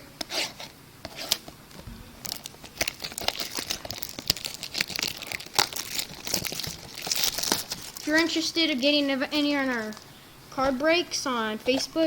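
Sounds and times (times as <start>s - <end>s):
plastic wrapping tearing and crinkling: 1.2s - 10.1s.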